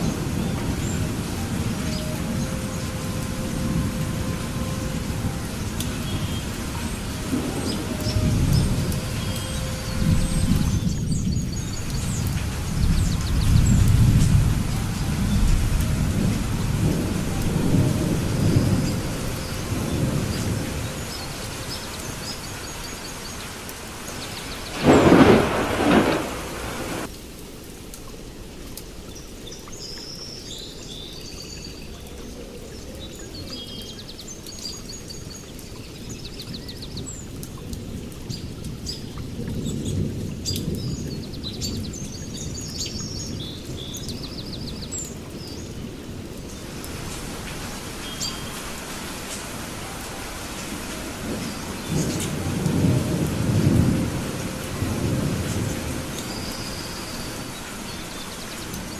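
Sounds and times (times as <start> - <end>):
loud thunder crack: 0.0 - 22.4, 24.3 - 27.1, 49.6 - 57.6
birds chirping: 0.0 - 27.1, 38.3 - 58.9
low rolling thunder: 0.0 - 27.1, 45.7 - 58.9
steady rain: 0.0 - 58.9.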